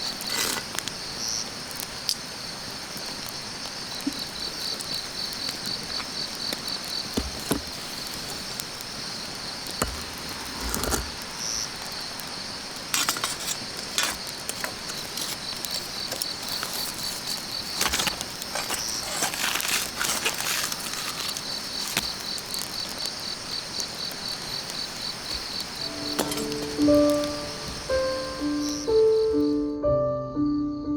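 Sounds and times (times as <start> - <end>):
insect chirping: 0.0 - 29.8
rustles and clicks: 12.8 - 23.2, 23.9 - 29.5.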